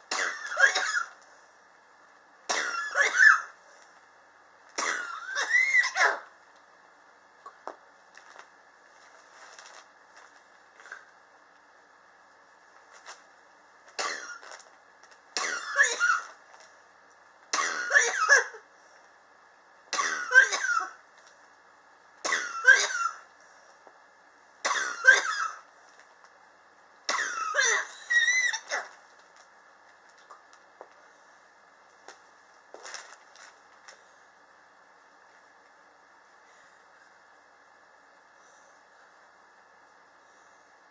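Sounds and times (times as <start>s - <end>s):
person coughing: 0.1s - 1.2s, 2.5s - 3.5s, 4.8s - 6.3s, 15.4s - 16.4s, 17.5s - 18.6s, 20.0s - 21.0s, 22.3s - 23.2s, 24.7s - 25.7s, 27.1s - 28.9s.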